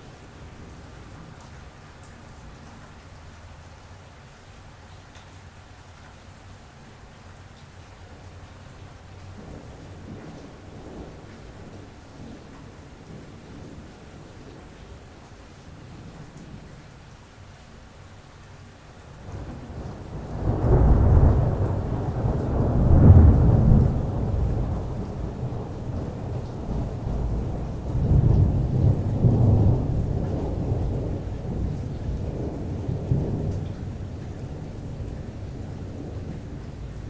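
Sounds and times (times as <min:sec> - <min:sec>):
steady rain: 0:00.0 - 0:37.0
rolling thunder rumble: 0:19.2 - 0:37.0.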